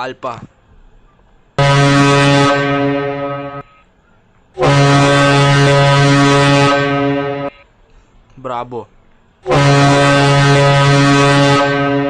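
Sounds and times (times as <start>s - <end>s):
low buzzy morse code tone: 1.6s - 7.8s, 9.4s - 12.0s.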